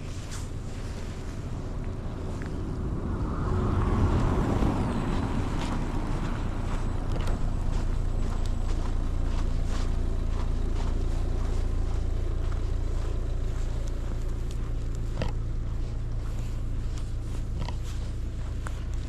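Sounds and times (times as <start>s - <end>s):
wind buffeting microphone: 0.0s - 8.9s.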